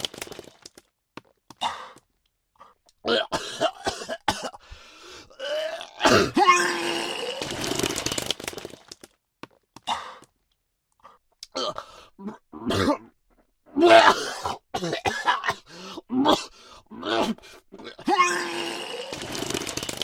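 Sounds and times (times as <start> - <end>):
person retching and vomiting: 3.0 - 4.6, 5.3 - 8.7, 11.4 - 20.0.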